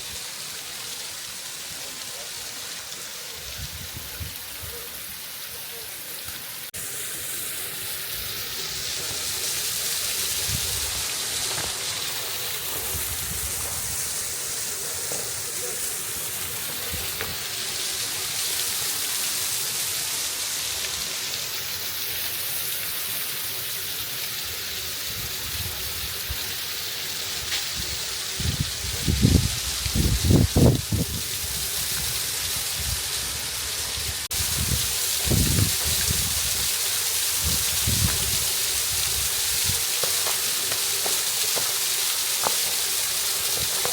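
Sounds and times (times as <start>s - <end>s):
waterfall rushing: 29.7s - 43.9s.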